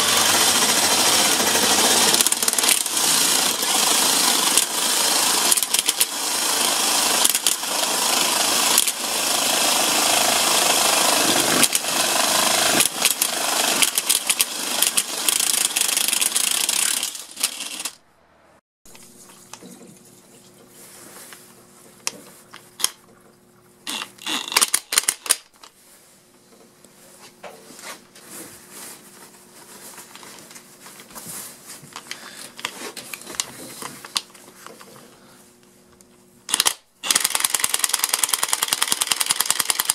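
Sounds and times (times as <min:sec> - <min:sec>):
impact wrench hammering: 0:00.0 - 0:18.0.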